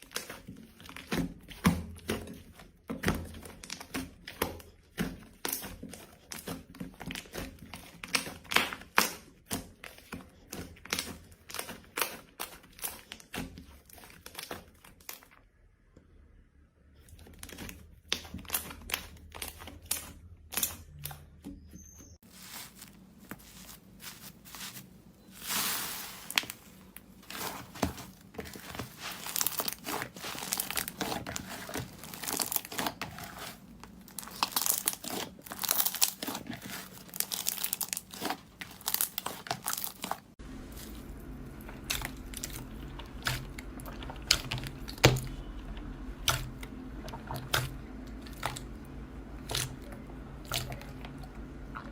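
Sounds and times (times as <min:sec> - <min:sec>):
slime crackling and popping: 0:25.4 - 0:40.4.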